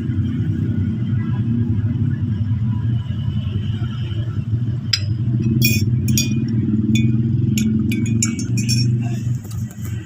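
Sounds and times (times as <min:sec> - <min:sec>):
steady low rumble: 0:03.3 - 0:10.0
glass clinks: 0:05.0 - 0:09.3.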